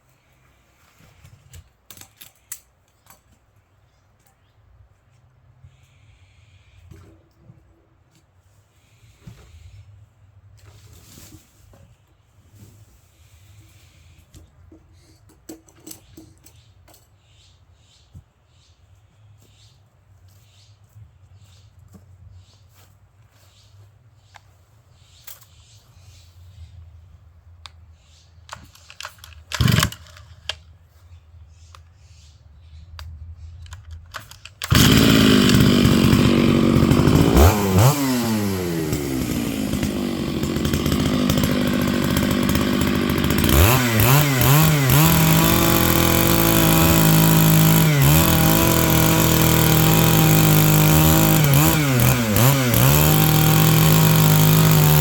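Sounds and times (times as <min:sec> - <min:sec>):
chainsaw revving: 0:29.6 - 0:30.0, 0:34.6 - 0:55.0.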